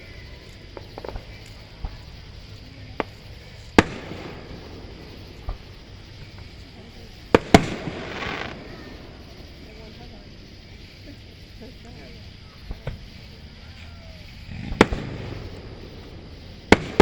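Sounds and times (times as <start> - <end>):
fireworks booming: 0.0 - 17.0
fireworks crackling: 0.0 - 17.0.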